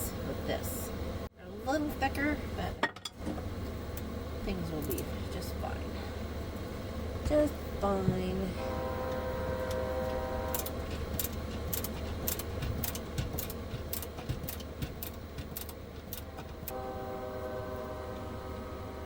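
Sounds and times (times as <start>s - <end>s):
multi-tone hum: 0.0s - 19.0s
steady low rumble: 3.5s - 19.0s
irregular sharp clicks: 10.5s - 16.8s.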